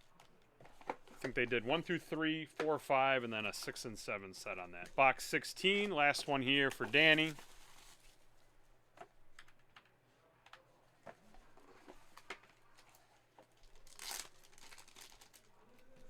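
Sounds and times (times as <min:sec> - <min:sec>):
wrapping tearing and crinkling: 0:12.8 - 0:15.6.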